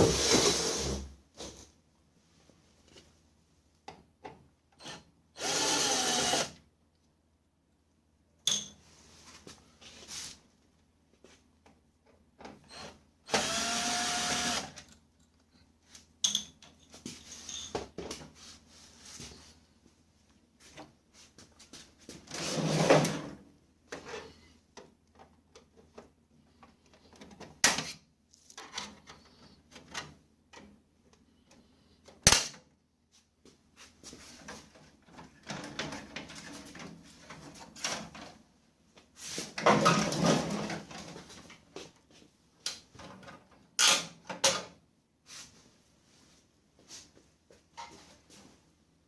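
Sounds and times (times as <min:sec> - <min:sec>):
parts scraping and rustling: 0:15.2 - 0:19.8.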